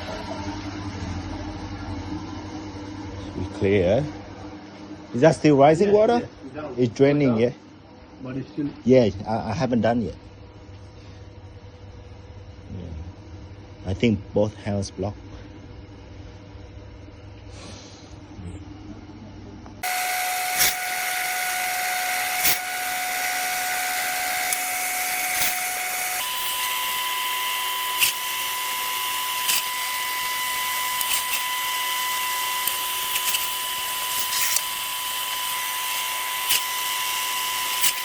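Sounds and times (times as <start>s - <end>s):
power tool motor whining: 19.8s - 38.0s.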